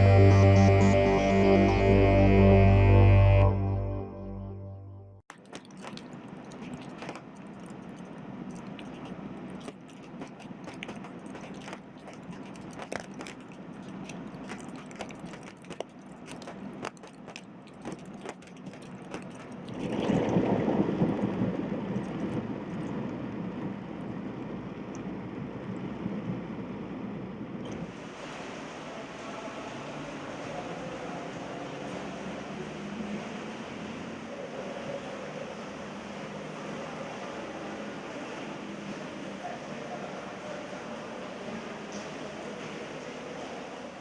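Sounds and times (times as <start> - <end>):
rushing noise: 0.0 - 4.6
raindrops clicking on surfaces: 5.3 - 26.8, 27.4 - 28.0
heavy rain: 8.3 - 44.0.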